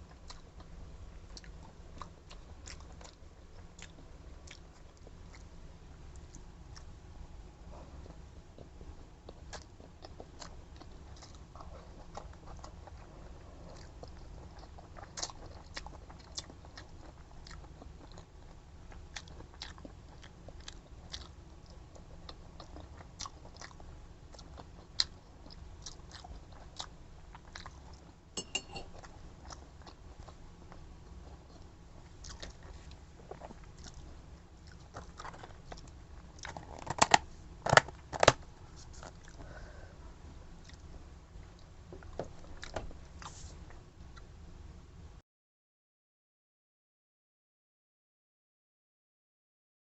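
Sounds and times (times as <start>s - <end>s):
person chewing food: 0.0s - 7.0s, 7.7s - 39.8s, 40.6s - 44.3s
short ring: 28.4s - 28.9s.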